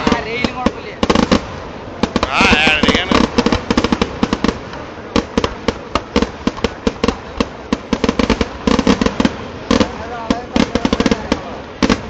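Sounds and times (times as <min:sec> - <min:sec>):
firecrackers banging: 0:00.0 - 0:12.0.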